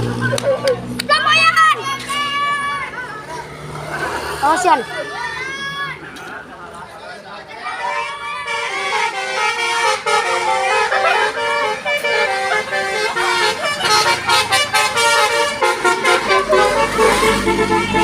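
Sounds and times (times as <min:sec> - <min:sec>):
bus musical horn tune: 0:07.7 - 0:18.0.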